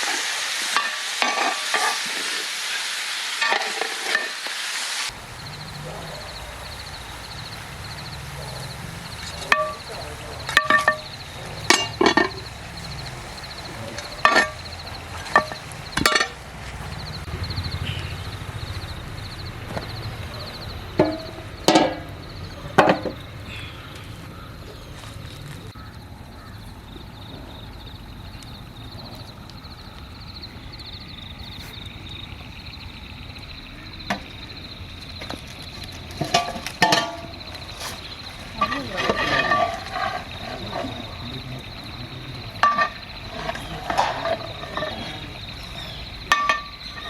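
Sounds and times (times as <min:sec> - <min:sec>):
insects chirping: 0:00.0 - 0:47.0
metallic clinks of cooking utensils: 0:09.2 - 0:16.4.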